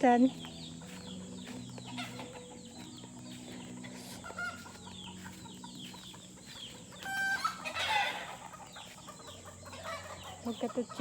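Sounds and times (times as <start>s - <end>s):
chicks peeping: 0.0s - 11.0s
chicken call: 7.0s - 8.3s.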